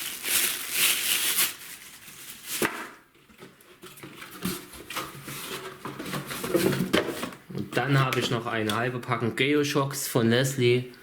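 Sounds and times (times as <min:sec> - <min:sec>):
plastic wrapping crinkling: 0:00.0 - 0:03.0.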